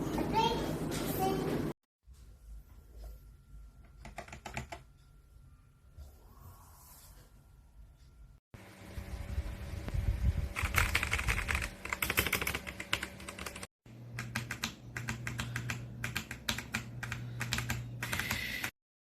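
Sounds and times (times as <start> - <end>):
mechanical keyboard typing: 4.0 - 4.8, 10.6 - 18.7
steady low hum: 4.8 - 18.3.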